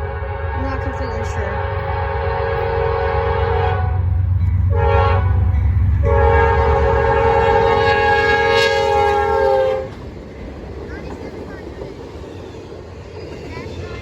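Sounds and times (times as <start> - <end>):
locomotive air horn blasts: 0.0 - 10.0
locomotive engine rumble: 0.0 - 14.0.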